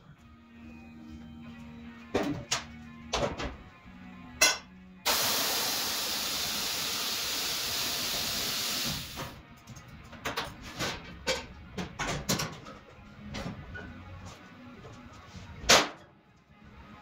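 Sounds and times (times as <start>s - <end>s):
pressurised spray hissing: 5.1s - 9.2s.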